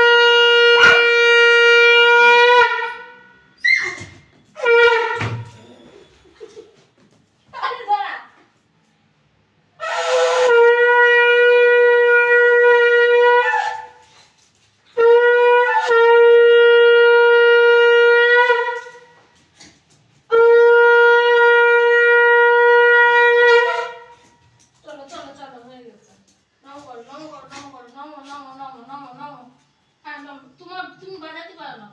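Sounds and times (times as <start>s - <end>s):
conch shell blast: 0.0s - 3.2s, 9.8s - 13.8s, 15.0s - 18.9s, 20.3s - 24.2s.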